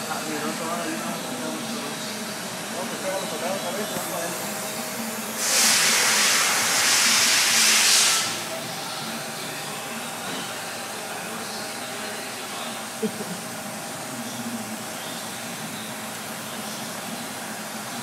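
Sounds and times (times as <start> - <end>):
loud steady hiss: 0.0 - 10.0.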